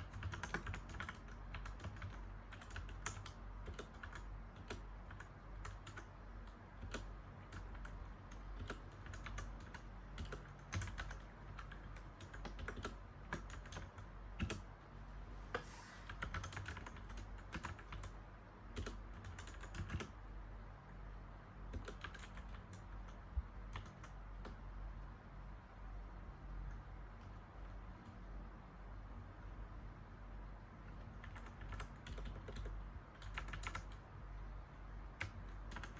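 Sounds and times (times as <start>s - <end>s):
mechanical keyboard keys clacking: 0.0s - 14.6s, 16.1s - 18.1s, 18.8s - 20.1s, 21.7s - 22.9s, 23.7s - 24.6s, 31.2s - 34.0s, 35.2s - 35.9s.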